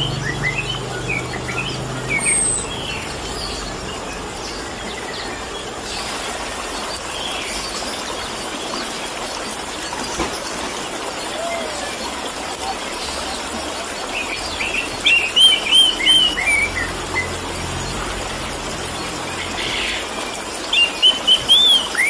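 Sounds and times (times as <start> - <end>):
bird chirping: 0.0 - 8.3
trickling water: 0.0 - 22.0.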